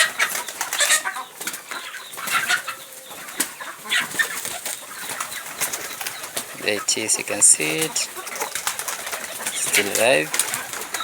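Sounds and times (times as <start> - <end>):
bird calls: 0.0 - 11.0.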